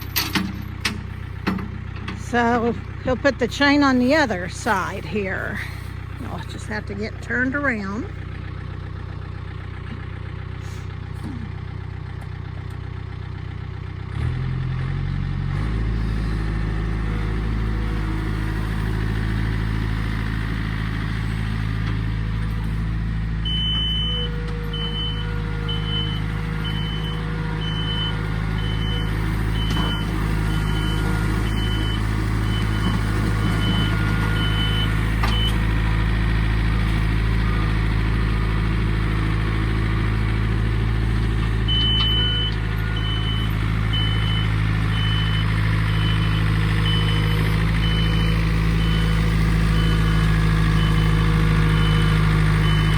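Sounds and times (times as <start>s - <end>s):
tractor engine running: 0.0s - 52.9s
reverse warning beeper: 23.5s - 35.7s, 41.7s - 52.9s.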